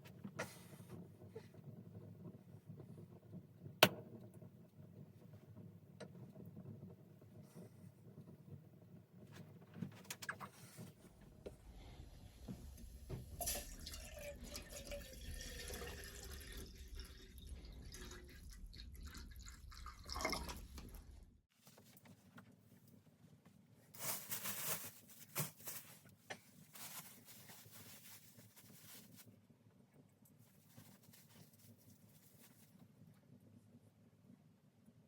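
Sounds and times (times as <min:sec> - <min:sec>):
water pouring and dripping: 0:12.2 - 0:21.4.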